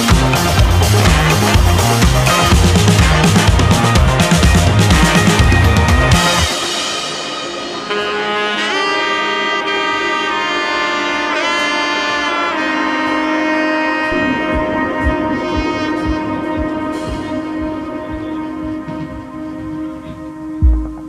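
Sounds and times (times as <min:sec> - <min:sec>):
low beat: 0:00.0 - 0:07.1, 0:14.1 - 0:21.0
long held melodic notes: 0:13.0 - 0:21.0.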